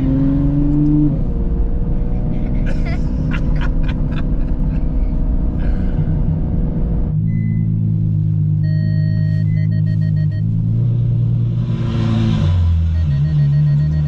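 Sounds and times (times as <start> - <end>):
car engine rumbling: 0.0 - 14.0
short electronic beeps: 7.3 - 7.8, 8.6 - 10.6, 12.8 - 14.0.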